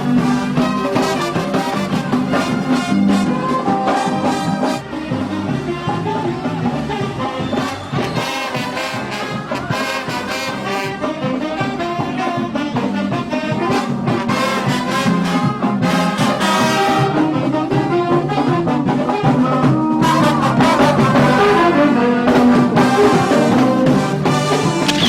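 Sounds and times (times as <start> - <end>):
brass instruments playing: 0.0 - 25.0
percussion: 0.0 - 25.0.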